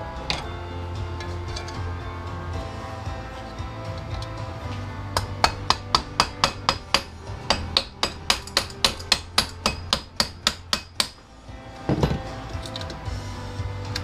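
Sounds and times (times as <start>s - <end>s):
hammer striking metal: 3.9s - 11.3s.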